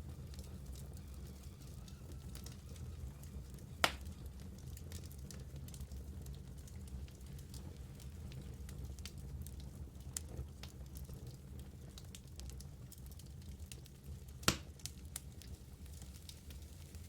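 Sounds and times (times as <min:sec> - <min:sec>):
fire crackling in a fireplace: 0:00.0 - 0:17.0
loud fire pop: 0:03.8 - 0:04.0.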